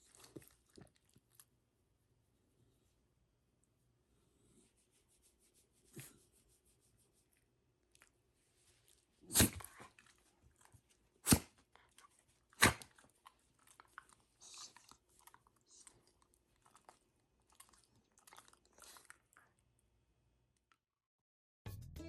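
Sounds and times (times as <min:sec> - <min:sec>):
dog snuffling and mouth noises: 0:04.4 - 0:19.5
dog snorting sharply: 0:09.3 - 0:09.8, 0:11.2 - 0:11.6, 0:12.6 - 0:12.9.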